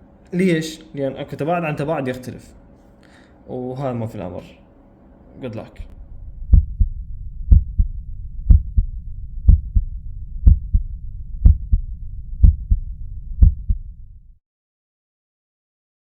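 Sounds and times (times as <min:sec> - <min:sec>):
low hum: 0:05.0 - 0:14.4
heartbeat thuds: 0:05.9 - 0:14.2.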